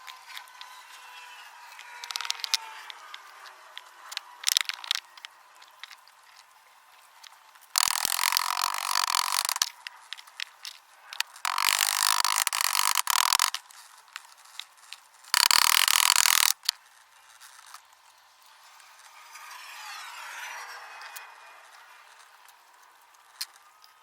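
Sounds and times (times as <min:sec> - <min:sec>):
faint clicks: 0:01.7 - 0:17.9
harsh tool noise bursts: 0:07.8 - 0:09.8, 0:11.2 - 0:13.6, 0:15.3 - 0:16.7.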